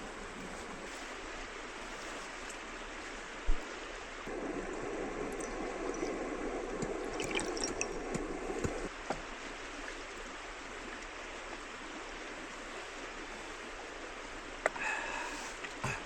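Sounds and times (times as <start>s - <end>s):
river water flowing: 0.0s - 16.0s.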